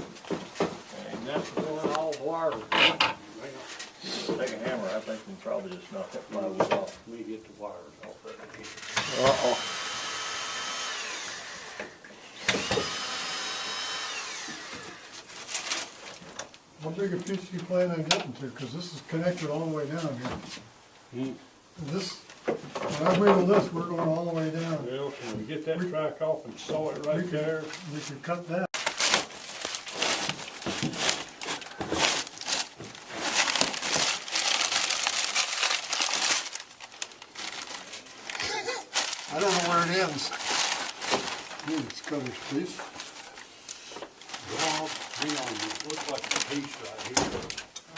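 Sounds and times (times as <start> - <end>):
power drill whining: 8.8 - 15.1
scenery crinkling and crunching: 26.6 - 47.9.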